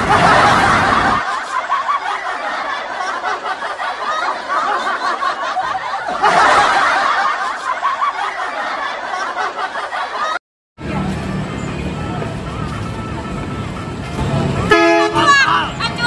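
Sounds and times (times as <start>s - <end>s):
people snickering and laughing: 0.0s - 10.4s.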